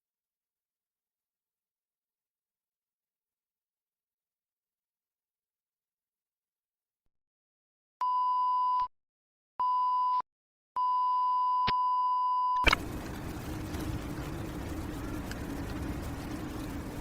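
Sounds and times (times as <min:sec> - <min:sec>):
noisy background with low hum: 0:12.6 - 0:17.0.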